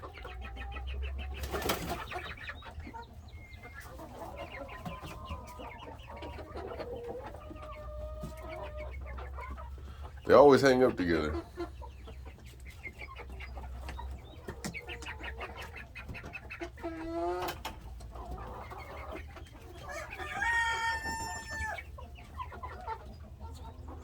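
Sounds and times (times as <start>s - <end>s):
chickens clucking: 0.0s - 24.0s
rooster crowing: 19.8s - 21.8s.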